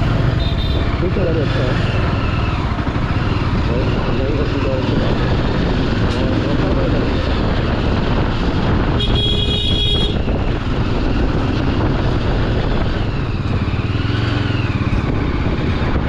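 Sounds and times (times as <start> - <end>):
motorcycle engine rumbling: 0.0 - 16.0
wind noise: 0.0 - 16.0
motorcycle horn: 0.3 - 1.0, 8.9 - 10.3.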